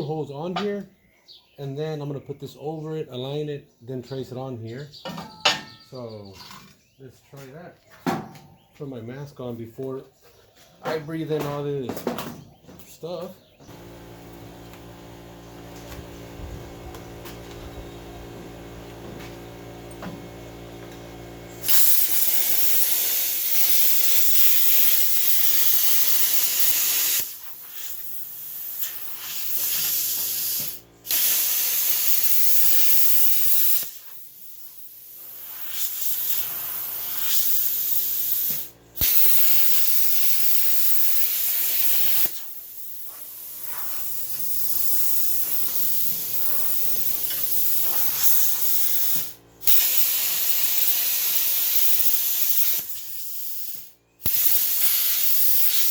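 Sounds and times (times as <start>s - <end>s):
plasma cutter hissing: 21.5s - 55.9s.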